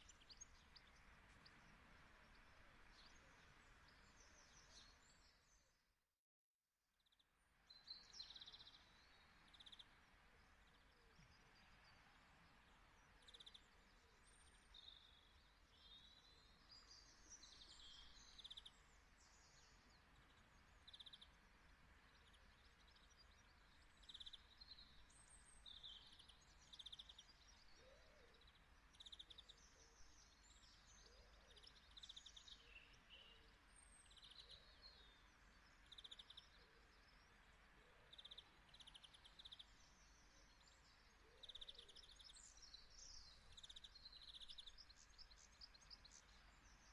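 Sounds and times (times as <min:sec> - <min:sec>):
small birds chirping: 0:00.0 - 0:05.6, 0:07.0 - 0:46.9.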